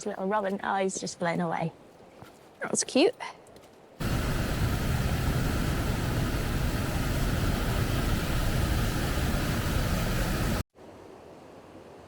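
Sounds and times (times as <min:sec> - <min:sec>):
rushing river and waterfalls: 0:04.0 - 0:10.6.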